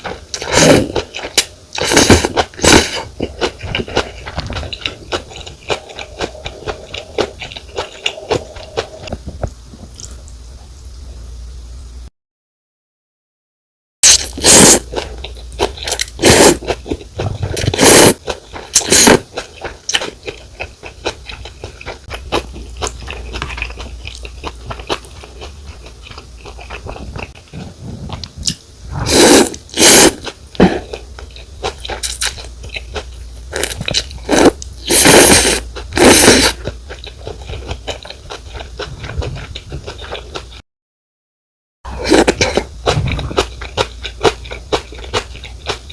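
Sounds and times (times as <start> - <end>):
wet chewing: 14.2 - 40.6, 42.0 - 45.9
noodles slurped: 15.8 - 18.2, 26.5 - 31.0, 33.5 - 36.6, 41.9 - 45.8.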